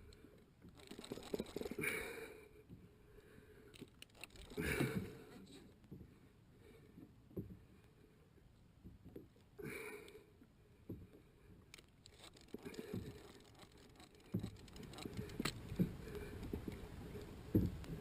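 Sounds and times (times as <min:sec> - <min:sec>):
water lapping around kayak: 0:00.0 - 0:18.0
small knocks against hull: 0:12.0 - 0:18.0.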